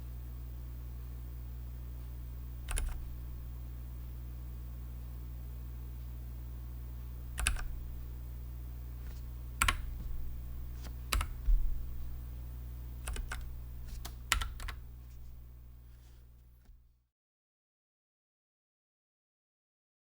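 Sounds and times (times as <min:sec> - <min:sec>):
steady low hum: 0:00.0 - 0:16.9
keyboard keys clacking: 0:02.7 - 0:03.2, 0:07.4 - 0:08.0, 0:09.6 - 0:12.3, 0:13.0 - 0:15.4.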